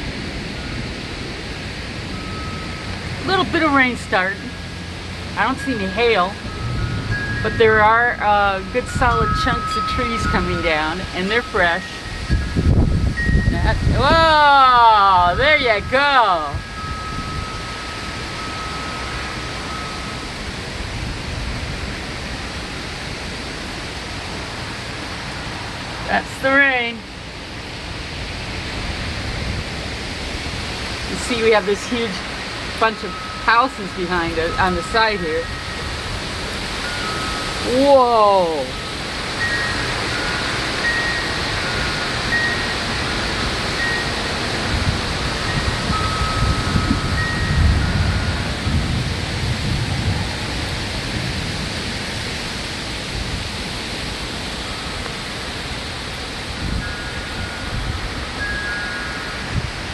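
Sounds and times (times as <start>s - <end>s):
rain hissing: 0.0s - 59.9s
wind rumbling on microphone: 0.0s - 59.9s
thin high tone: 2.1s - 20.8s, 31.1s - 48.8s, 56.6s - 59.9s
low thunder rumble: 41.2s - 54.5s.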